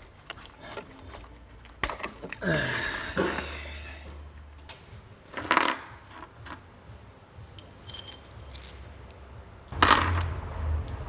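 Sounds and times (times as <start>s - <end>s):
small metal parts clinking: 0.0s - 2.4s, 5.3s - 10.4s.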